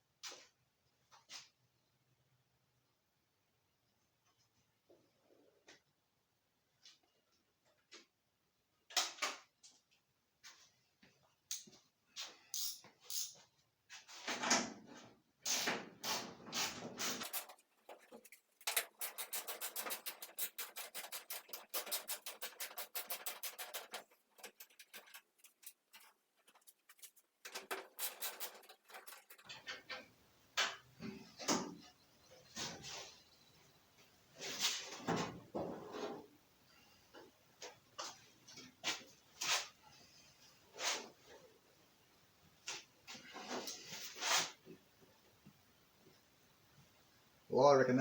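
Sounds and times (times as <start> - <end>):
ratchet clicking: 18.7 - 25.6.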